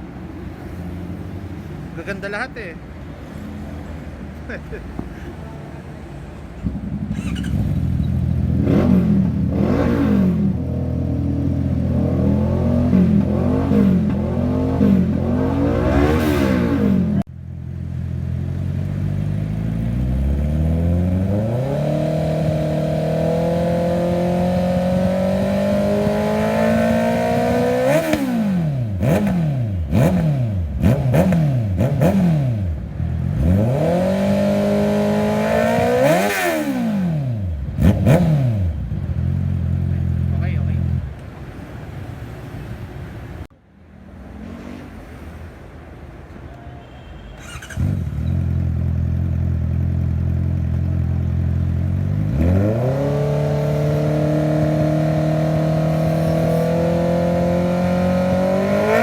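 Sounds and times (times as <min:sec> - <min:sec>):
motorcycle engine revving: 0:06.6 - 0:41.1, 0:47.4 - 0:59.0.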